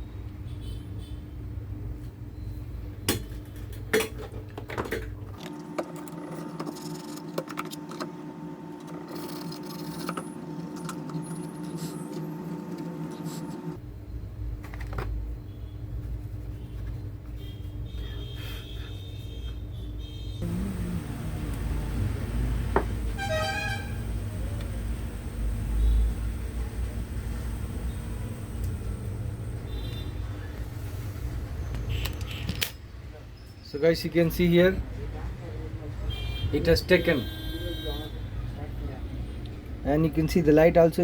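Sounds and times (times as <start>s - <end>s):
steady humming tone: 20.4s - 30.8s
low hum: 20.4s - 30.9s.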